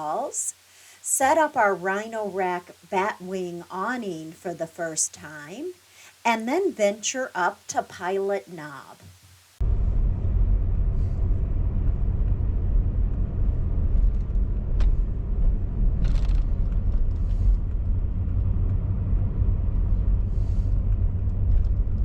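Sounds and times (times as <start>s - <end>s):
vehicle driving rumble: 9.6s - 22.0s.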